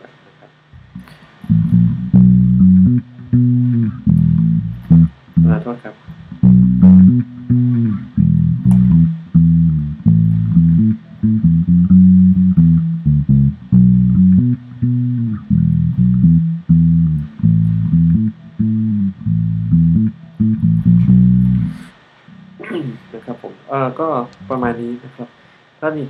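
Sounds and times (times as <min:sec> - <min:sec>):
electric bass guitar line: 0:00.7 - 0:23.4, 0:24.2 - 0:25.0.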